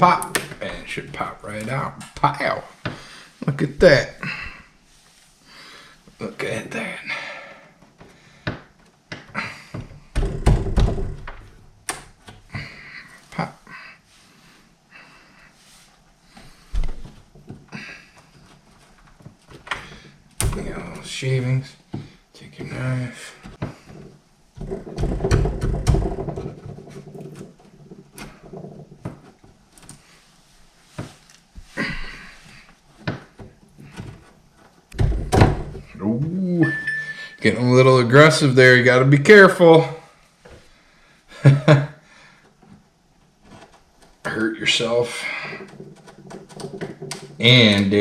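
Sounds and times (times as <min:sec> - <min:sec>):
dull knocks and thuds: 0:07.9 - 0:12.5, 0:23.4 - 0:29.6, 0:32.9 - 0:36.0.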